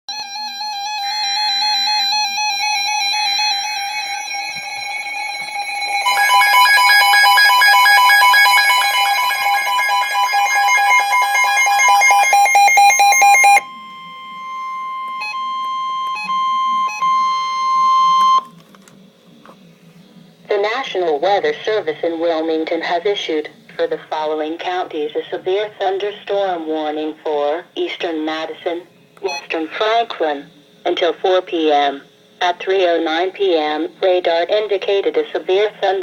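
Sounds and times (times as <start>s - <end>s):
two-tone attention signal: 0.2s - 18.5s
warbling electronic tones: 0.8s - 18.4s
steady electronic tone: 1.0s - 18.4s.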